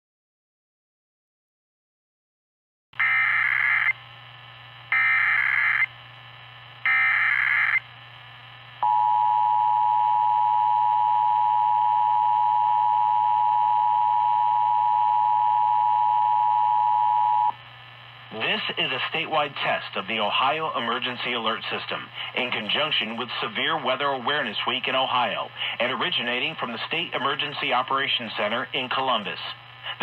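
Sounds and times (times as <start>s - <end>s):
buzzy data bursts: 4.9s - 5.9s, 6.9s - 7.8s.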